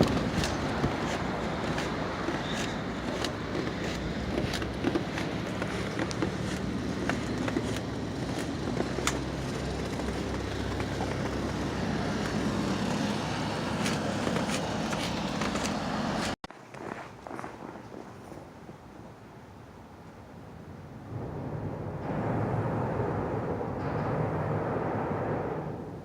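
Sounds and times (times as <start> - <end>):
truck engine hum: 0.0 - 16.4
road noise: 0.0 - 26.0.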